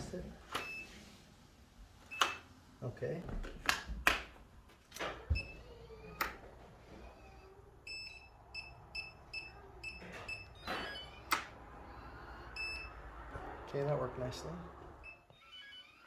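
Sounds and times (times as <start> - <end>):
keypad beeps: 2.1 - 2.4, 12.6 - 12.9.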